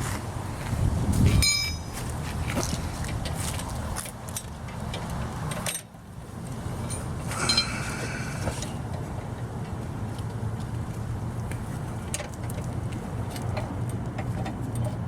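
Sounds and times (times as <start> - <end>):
low steady rumble: 0.0 - 15.0
bright ringing clink: 1.4 - 1.9
light metallic clinks and rattles: 1.4 - 2.0, 6.8 - 9.8.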